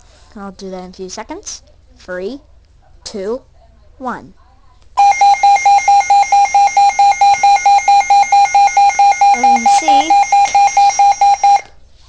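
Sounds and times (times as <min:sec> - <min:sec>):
rapid high beeping alert: 0:05.0 - 0:11.6.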